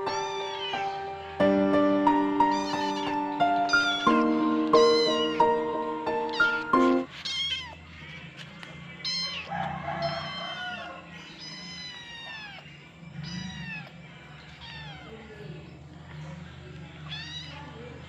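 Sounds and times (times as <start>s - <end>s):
kitten meowing: 0.0s - 1.3s, 2.2s - 7.9s, 9.0s - 14.0s, 14.6s - 15.1s, 17.1s - 17.7s.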